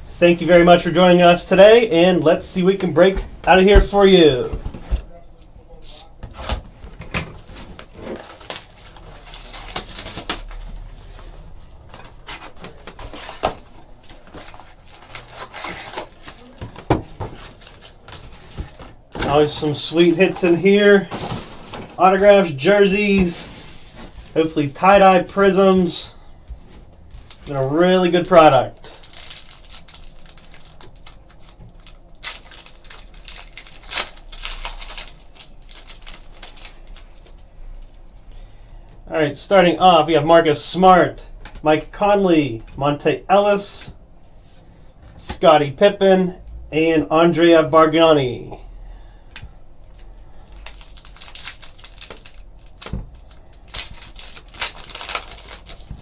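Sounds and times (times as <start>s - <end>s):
wrapper and cardboard rustling: 5.8s - 37.8s, 50.4s - 56.0s.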